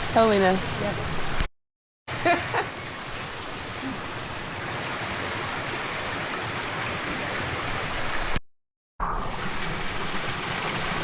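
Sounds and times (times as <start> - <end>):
water pouring and splashing: 2.9 - 8.4, 9.3 - 11.0.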